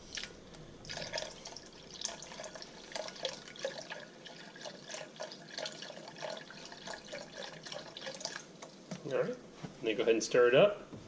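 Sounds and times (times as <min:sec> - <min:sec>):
broth pouring into a pot: 0:00.0 - 0:08.8.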